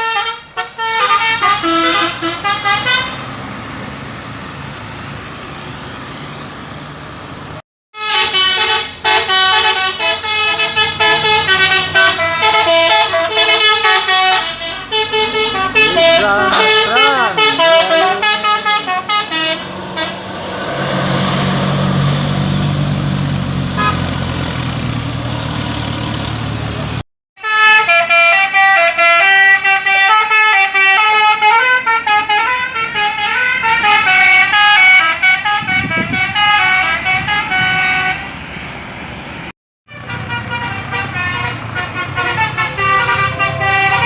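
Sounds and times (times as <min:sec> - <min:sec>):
bus musical air horn melody: 0:00.0 - 0:03.4, 0:08.0 - 0:20.5, 0:23.7 - 0:24.2, 0:27.4 - 0:38.4, 0:39.9 - 0:44.0.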